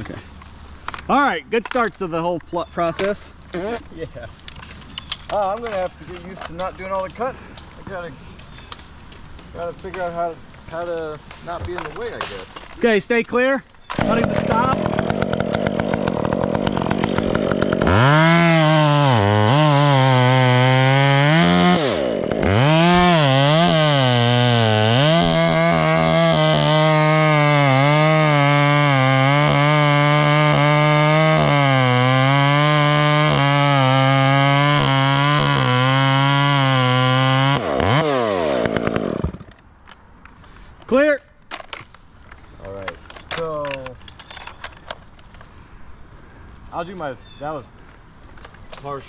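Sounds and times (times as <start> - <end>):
chainsaw cutting wood: 13.9 - 39.6.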